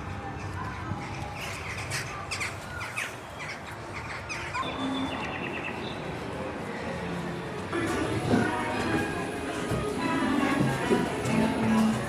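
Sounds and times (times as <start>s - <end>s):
birds chirping: 0.2s - 7.0s.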